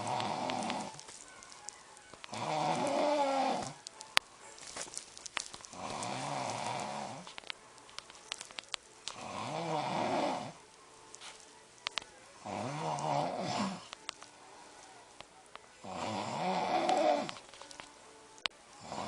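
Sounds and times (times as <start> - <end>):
man snoring: 0.0 - 1.0, 2.3 - 3.8, 5.7 - 7.3, 9.2 - 10.6, 12.4 - 13.9, 15.8 - 17.4, 18.8 - 19.0.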